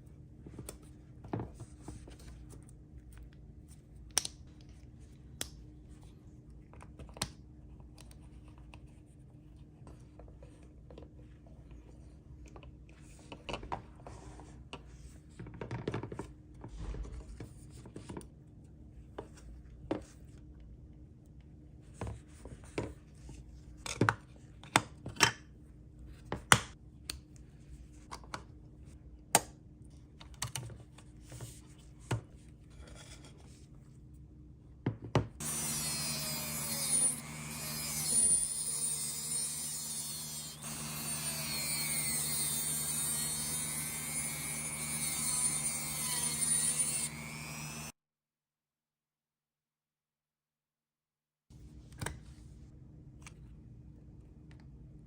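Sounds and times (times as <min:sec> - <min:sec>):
tool grinding on model: 0:35.4 - 0:47.9.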